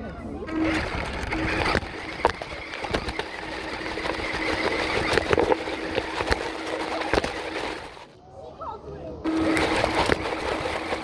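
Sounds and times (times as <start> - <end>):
toy truck motor whirring: 0.3 - 8.2, 9.2 - 11.0.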